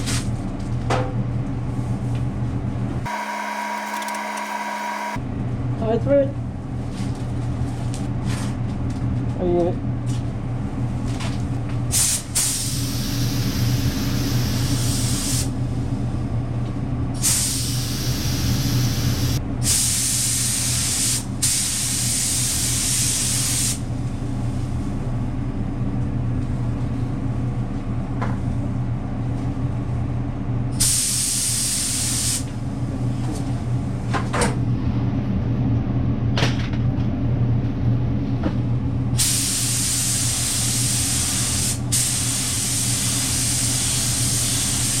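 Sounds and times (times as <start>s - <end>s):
low machine hum: 0.4s - 11.9s, 23.8s - 30.8s.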